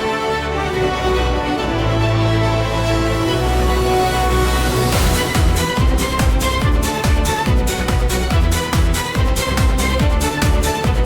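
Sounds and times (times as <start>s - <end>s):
electronic dance music: 3.1s - 11.0s.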